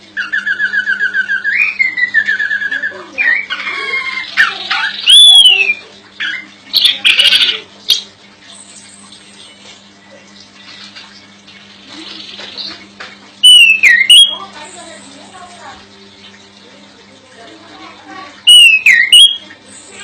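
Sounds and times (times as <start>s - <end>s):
thrush calling whistled notes: 0.2s - 3.6s, 5.0s - 5.8s, 13.4s - 14.4s, 18.5s - 19.5s.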